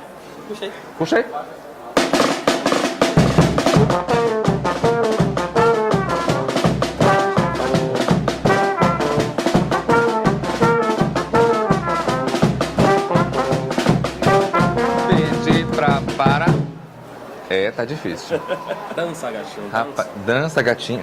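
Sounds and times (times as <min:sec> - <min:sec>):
steady drum beat: 0:02.0 - 0:16.8
brass horns playing melody: 0:03.2 - 0:16.8.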